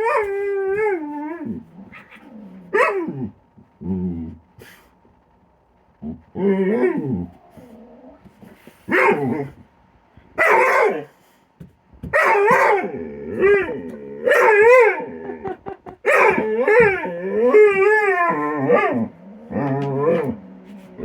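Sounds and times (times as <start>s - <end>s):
dog barking: 2.8s - 3.1s, 10.4s - 11.1s, 12.1s - 12.9s, 14.3s - 14.9s, 16.1s - 16.4s.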